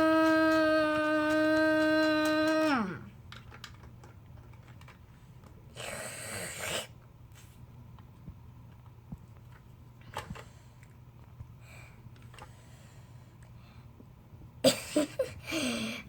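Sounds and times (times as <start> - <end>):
plastic toy pieces clicking: 0.0 - 5.0.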